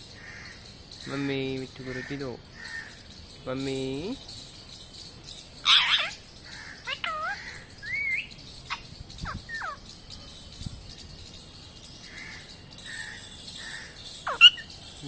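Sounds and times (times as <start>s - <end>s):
parrot whistled chirps: 7.8s - 9.8s.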